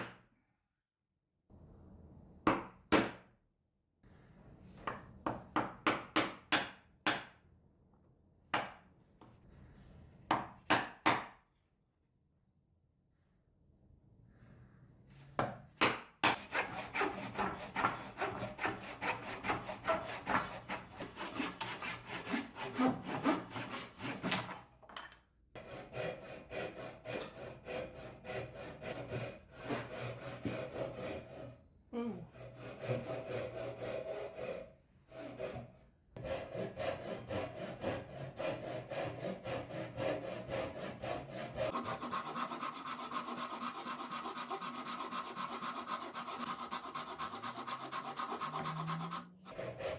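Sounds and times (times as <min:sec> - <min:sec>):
handsaw cutting wood: 0:16.2 - 0:24.6, 0:25.6 - 0:31.6, 0:32.3 - 0:49.9.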